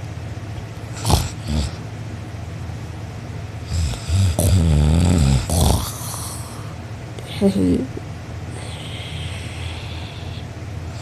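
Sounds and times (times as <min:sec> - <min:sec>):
person snoring loudly: 0:01.0 - 0:01.8, 0:03.7 - 0:06.6
short snorts: 0:01.0 - 0:01.8.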